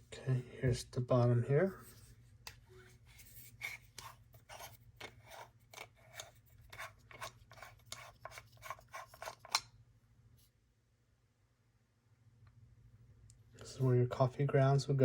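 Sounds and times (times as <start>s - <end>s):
threaded parts twisting rasp: 3.2s - 9.7s.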